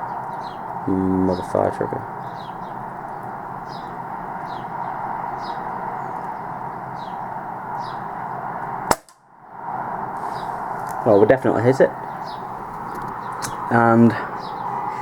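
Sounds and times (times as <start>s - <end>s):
small bird chirping: 0.0s - 8.1s, 10.2s - 15.0s
air rifle firing crack: 8.9s - 9.2s
steady hiss: 9.6s - 15.0s.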